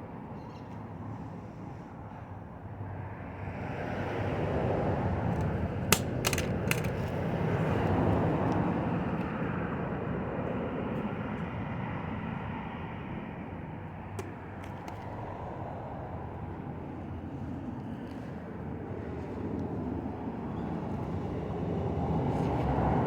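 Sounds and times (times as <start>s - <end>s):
sharp metallic clicks: 5.9s - 7.2s.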